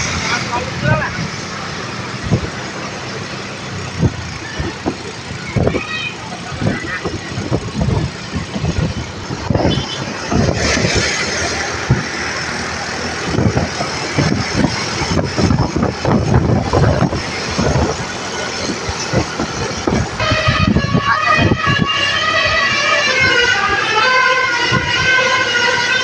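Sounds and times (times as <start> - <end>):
traffic road and engine noise: 0.0 - 26.0
wind rumbling on microphone: 0.0 - 26.0
bus horn: 9.5 - 10.5, 20.2 - 26.0.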